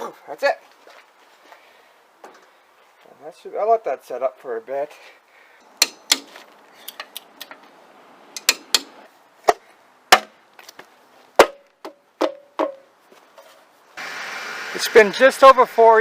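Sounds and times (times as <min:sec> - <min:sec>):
hand tools knocking and clicking: 0:05.8 - 0:06.3, 0:08.4 - 0:09.0.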